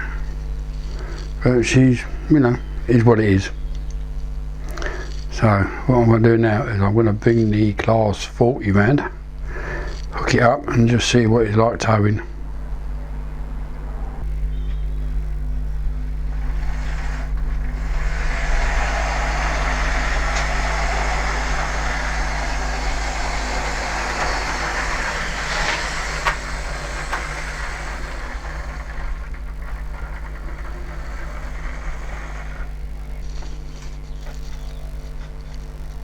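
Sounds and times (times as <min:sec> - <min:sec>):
steady low hum: 0:00.0 - 0:36.0
model train motor whirring: 0:15.8 - 0:34.6.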